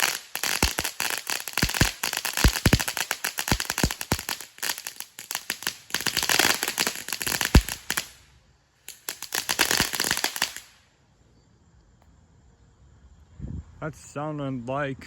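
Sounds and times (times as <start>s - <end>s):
firework crackling pops and bangs: 0.0s - 10.8s.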